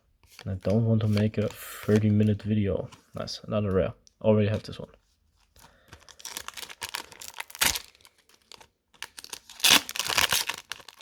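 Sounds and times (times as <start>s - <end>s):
foil wrapper tearing and crinkling: 5.9s - 11.0s.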